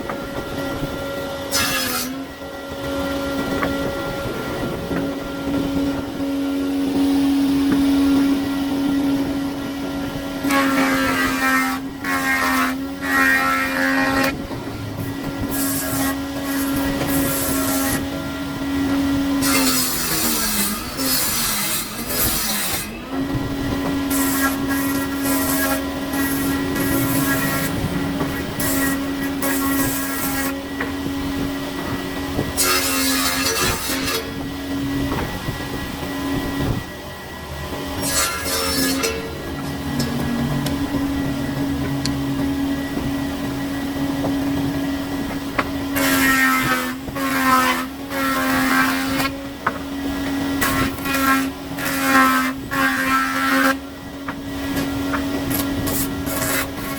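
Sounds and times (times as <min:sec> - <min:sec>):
electric woodworking machine running: 0:00.0 - 0:56.9
power tool motor humming: 0:00.0 - 0:56.9
rough wood cutting noise: 0:00.0 - 0:56.9
hissing cuts into wood: 0:54.6 - 0:56.9.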